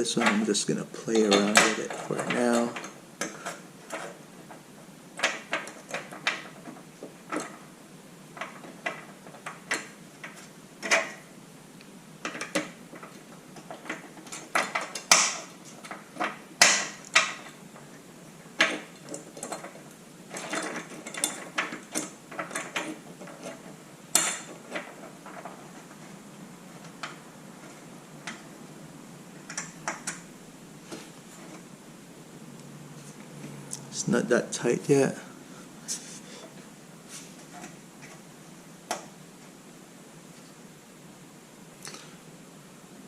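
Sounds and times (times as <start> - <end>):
metal bracket clicks and knocks: 12.2 - 17.6.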